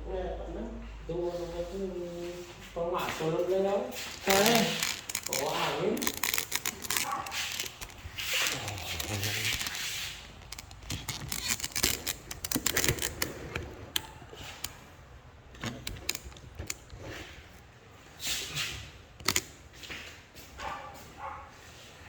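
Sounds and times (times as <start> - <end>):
handling clicks and taps: 4.1 - 14.8, 15.5 - 17.7, 19.2 - 19.6.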